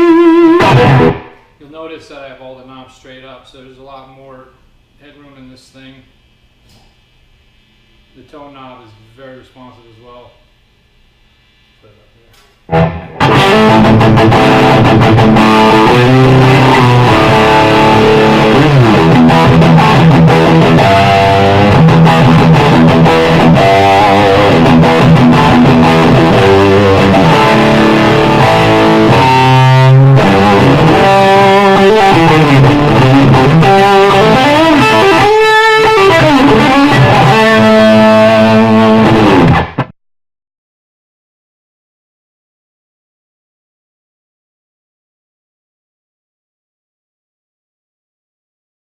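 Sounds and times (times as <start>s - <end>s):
distorted electric guitar: 0.0s - 1.5s, 12.7s - 39.9s.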